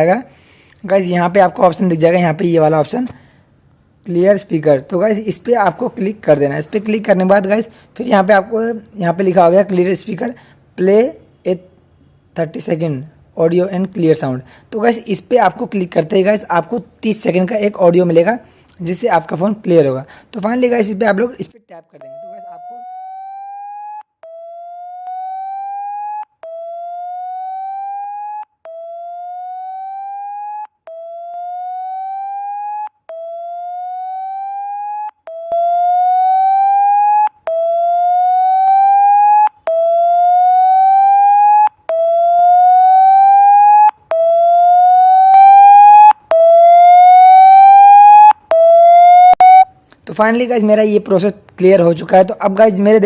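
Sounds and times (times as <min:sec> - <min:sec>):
phone speaker upward sweeping tone: 0:22.0 - 0:49.6.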